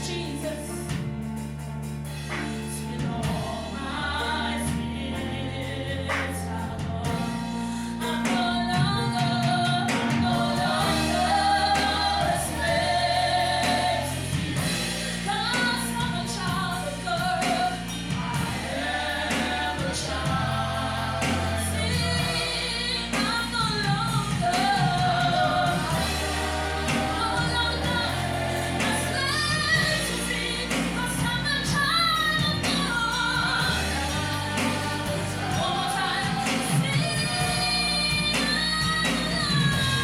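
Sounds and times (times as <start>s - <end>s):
gospel singers with band: 0.0s - 40.0s
held low bass notes: 10.3s - 40.0s.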